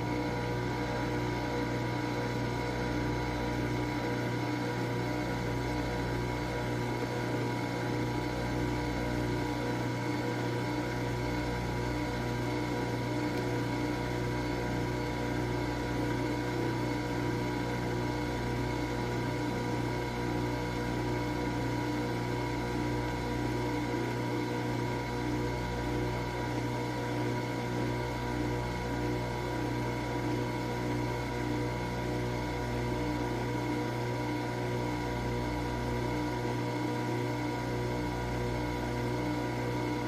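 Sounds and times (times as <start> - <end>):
coffee machine humming: 0.0 - 40.0.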